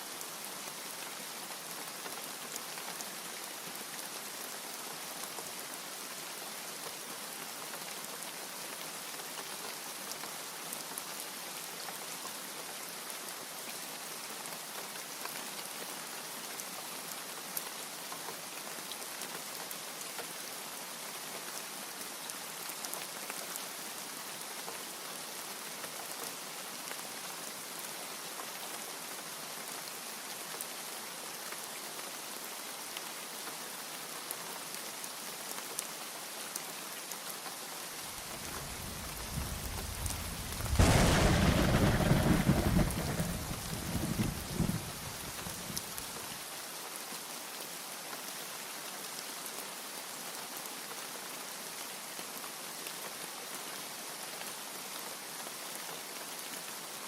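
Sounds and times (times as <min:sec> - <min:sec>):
steady rain hiss: 0:00.0 - 0:57.0
ticks of raindrops: 0:37.0 - 0:46.3.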